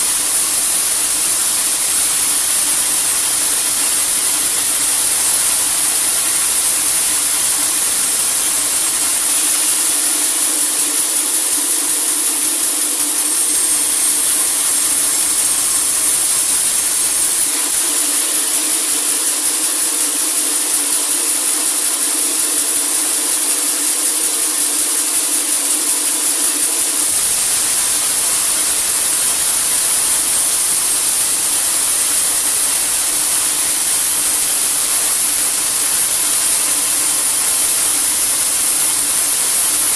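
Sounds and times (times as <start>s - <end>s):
low machine hum: 0.0s - 20.8s
saw cutting log hiss: 0.0s - 39.9s.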